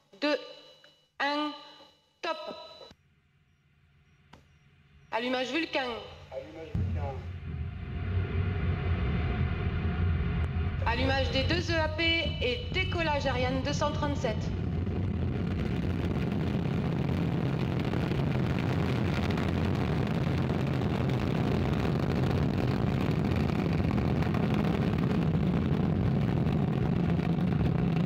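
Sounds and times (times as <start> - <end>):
rocket lifting off rumble: 6.7 - 28.0.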